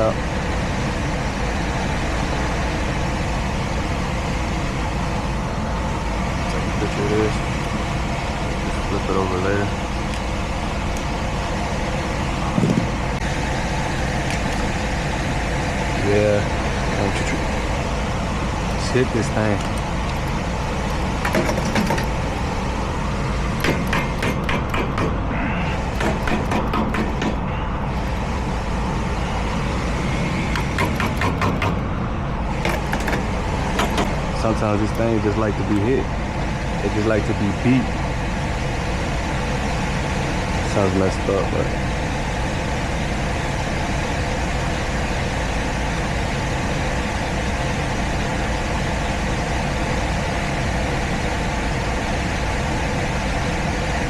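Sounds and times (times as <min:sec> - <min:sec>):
furnace fan whirring: 0:00.0 - 0:54.0
low hum: 0:00.0 - 0:54.0
low mechanical rumble: 0:00.0 - 0:54.0
tool knocking on metal valve: 0:21.2 - 0:22.1, 0:23.6 - 0:25.2, 0:25.9 - 0:27.5, 0:30.5 - 0:31.8.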